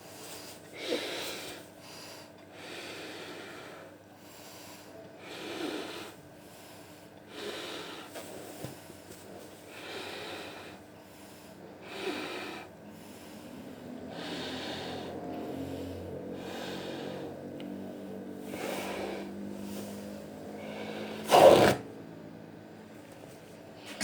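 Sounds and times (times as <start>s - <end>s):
heavy snorting breaths: 9.6s - 21.8s.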